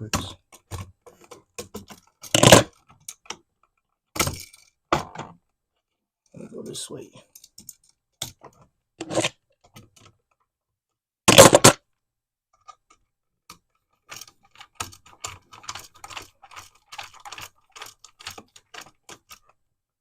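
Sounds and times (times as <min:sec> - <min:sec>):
small metallic clicks and scrapes: 0:00.2 - 0:04.8, 0:07.2 - 0:10.5, 0:12.5 - 0:19.6.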